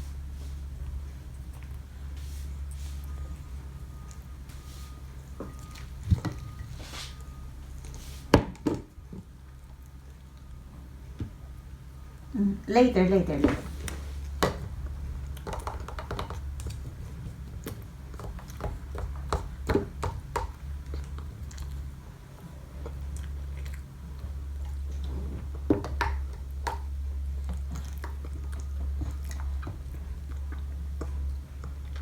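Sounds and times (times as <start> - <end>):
toddler chewing: 13.7 - 32.0.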